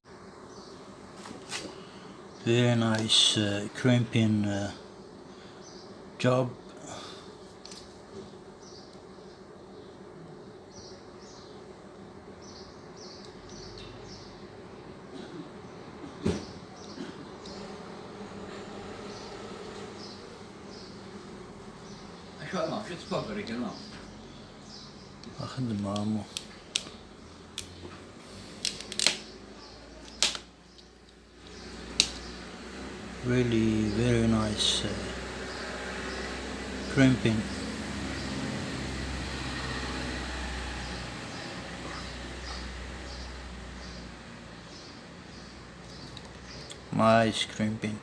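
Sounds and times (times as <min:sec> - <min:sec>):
small bird chirping: 0:07.7 - 0:11.7, 0:12.4 - 0:14.6, 0:18.9 - 0:28.4, 0:39.6 - 0:46.9.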